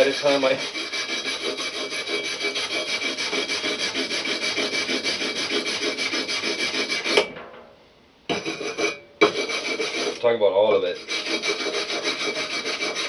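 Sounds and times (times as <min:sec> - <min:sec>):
power tool scouring paint off metal: 0:00.0 - 0:07.1, 0:11.0 - 0:13.0.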